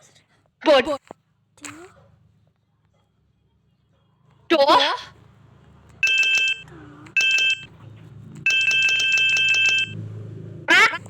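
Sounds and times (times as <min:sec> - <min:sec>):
trilling telephone ringtone: 0:06.0 - 0:07.7, 0:08.4 - 0:10.0.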